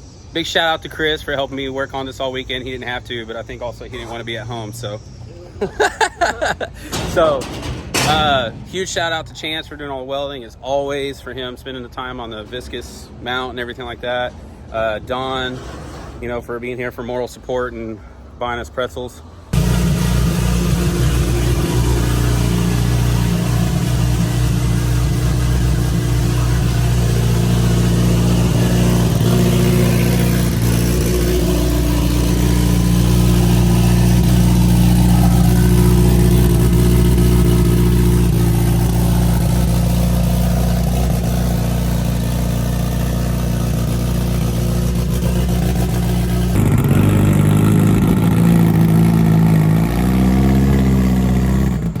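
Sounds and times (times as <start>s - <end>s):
vehicle engine droning: 0.0s - 17.0s, 19.2s - 52.0s
engine note rising and falling: 19.6s - 52.0s.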